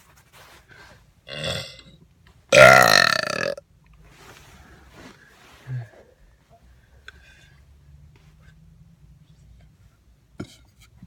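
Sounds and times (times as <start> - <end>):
person burping: 1.3 - 1.9, 2.5 - 3.6.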